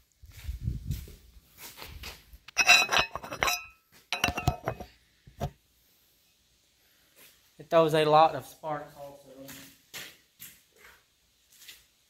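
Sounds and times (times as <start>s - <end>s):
metal clinking and rattling: 2.5s - 5.5s.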